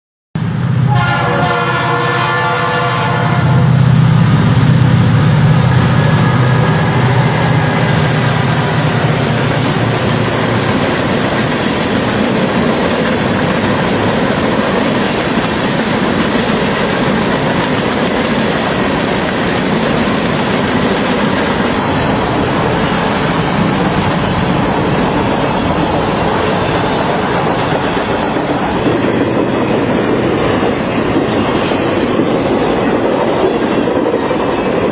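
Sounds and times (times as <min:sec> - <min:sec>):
train horn blast: 0:00.9 - 0:03.8
locomotive engine: 0:03.8 - 0:34.9
train wheels clattering on rail: 0:04.7 - 0:34.9.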